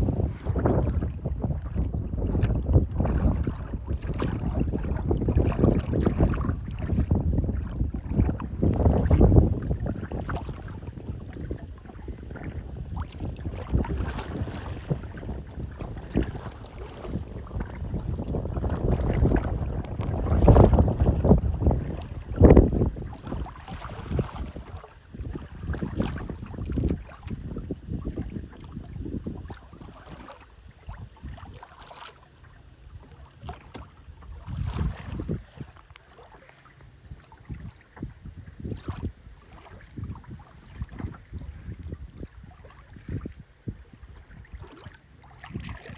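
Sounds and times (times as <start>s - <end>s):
wind buffeting microphone: 0.0s - 31.8s, 32.9s - 35.9s, 37.0s - 45.9s
rushing water: 0.0s - 32.4s, 44.4s - 45.9s
boat motor hum: 0.0s - 45.9s.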